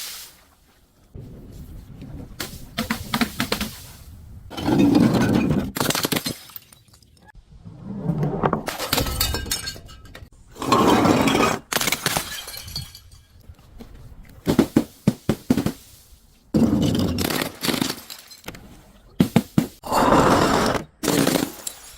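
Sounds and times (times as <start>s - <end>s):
glass shattering and crunching: 4.6s - 7.2s, 8.7s - 10.3s, 11.2s - 13.4s, 16.8s - 18.6s, 21.0s - 21.9s.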